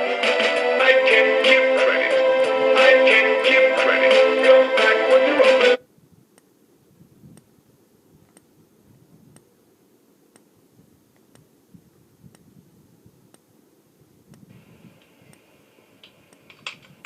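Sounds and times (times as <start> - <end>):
faint regular ticking: 10.3 - 11.5.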